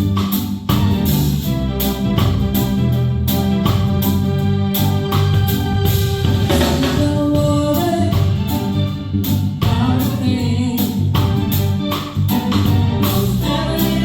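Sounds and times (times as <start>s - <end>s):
bass guitar: 0.0s - 14.0s
organ-like keyboard chords: 0.0s - 14.0s
steady drum beat: 0.0s - 14.0s.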